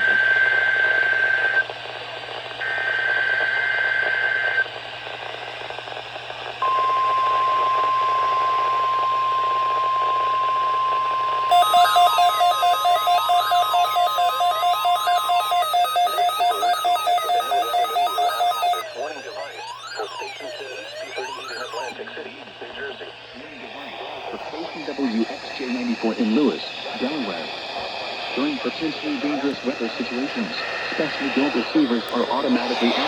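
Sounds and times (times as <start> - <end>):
radio hiss: 0.0 - 33.0
pulsing two-tone alarm beep: 6.6 - 22.0
warbling data tones: 6.6 - 23.3
steady alert tone: 11.5 - 21.9.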